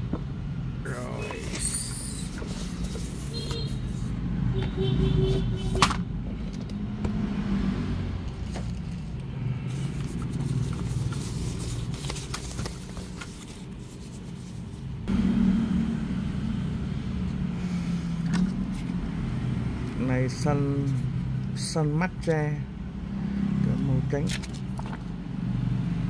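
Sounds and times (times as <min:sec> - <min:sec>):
low rumble of engines: 0:00.0 - 0:26.0
box being handled clicks and scrapes: 0:01.1 - 0:04.2, 0:08.3 - 0:14.7.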